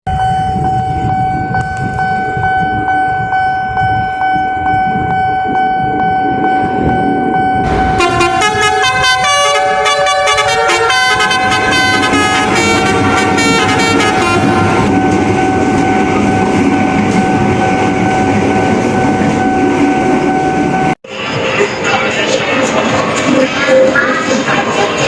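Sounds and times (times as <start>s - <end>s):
low vehicle rumble: 0.1s - 21.0s
steady high tone: 0.1s - 25.0s
multi-tone horn melody: 7.6s - 18.2s.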